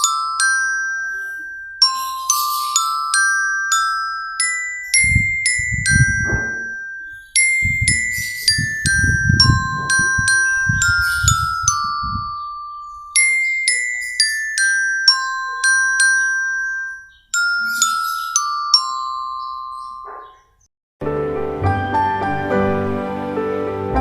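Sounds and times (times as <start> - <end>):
glockenspiel melody: 0.0 - 20.4, 21.0 - 24.0
low dull thuds: 5.0 - 6.8.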